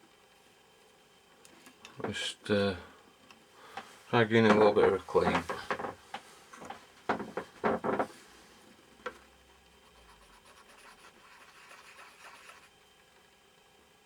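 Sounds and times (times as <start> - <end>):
scratching on circuit board: 9.8 - 12.8.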